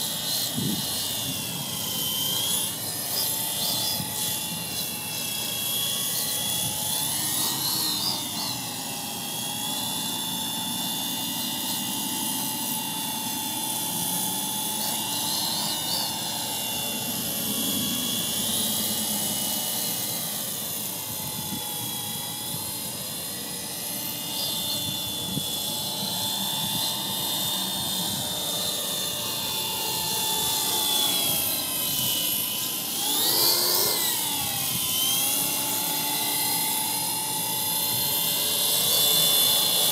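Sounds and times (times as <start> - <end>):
rc helicopter motor whining: 0.0 - 39.9
wind buffeting microphone: 0.6 - 1.5.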